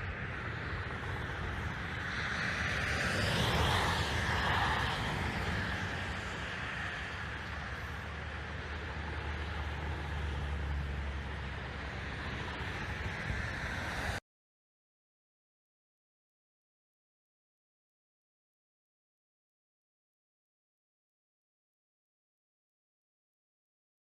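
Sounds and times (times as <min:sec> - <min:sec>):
engine rumble: 0:00.0 - 0:14.2.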